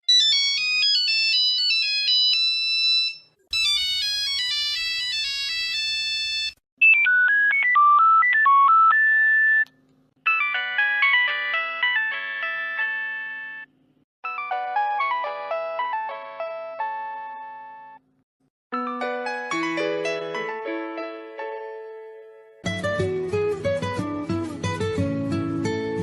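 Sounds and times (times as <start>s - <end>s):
phone ringtone melodies: 0.1s - 18.0s, 18.8s - 21.0s.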